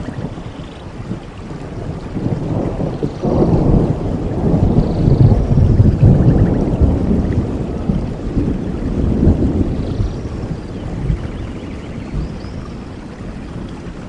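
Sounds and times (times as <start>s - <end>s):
low rolling thunder: 0.0s - 14.0s
steady rainfall: 0.0s - 14.0s.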